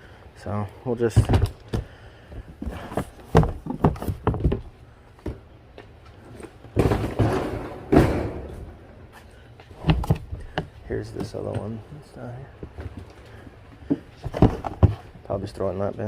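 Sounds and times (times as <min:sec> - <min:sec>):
boxes knocking: 0:01.1 - 0:01.9, 0:02.7 - 0:05.4, 0:06.7 - 0:08.7, 0:13.8 - 0:15.1
boxes scraping: 0:02.4 - 0:04.8, 0:06.2 - 0:11.8, 0:13.0 - 0:15.2.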